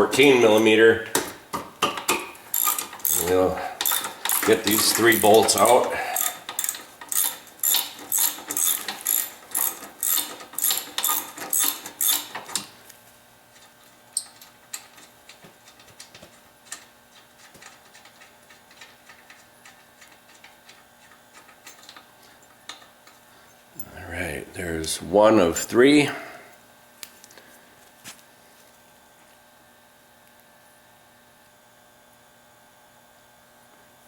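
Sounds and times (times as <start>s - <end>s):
ratchet wrench clicking: 2.5s - 12.7s.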